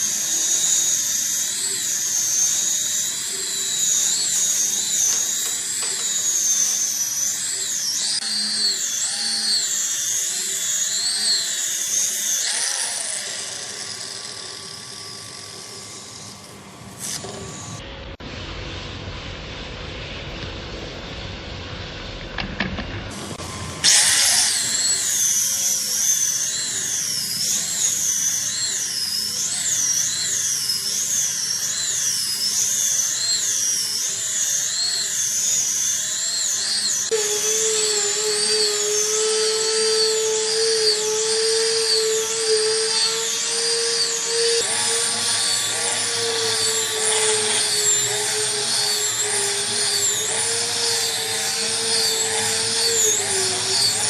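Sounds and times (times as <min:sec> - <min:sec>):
power tool whining on wood: 0:00.0 - 0:17.8, 0:22.4 - 0:54.0
steady low hum: 0:13.6 - 0:23.9.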